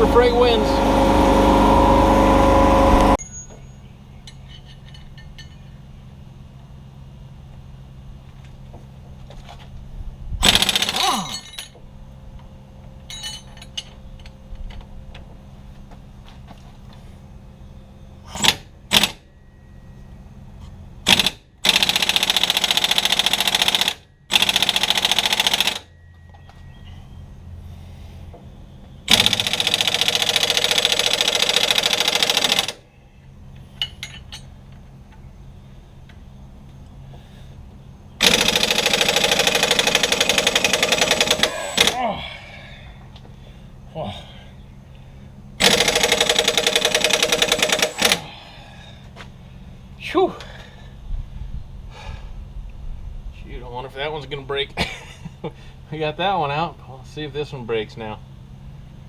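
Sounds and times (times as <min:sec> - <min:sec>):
steady low hum: 0:00.0 - 0:59.0
impact wrench hammering: 0:38.2 - 0:42.0.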